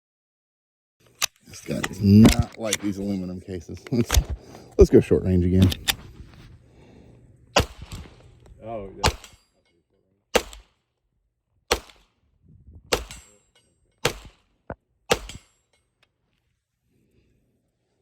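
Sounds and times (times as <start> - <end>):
gunshots: 7.6 - 8.2, 9.0 - 9.4, 10.3 - 10.8, 11.7 - 12.2, 12.9 - 13.4, 14.0 - 15.5.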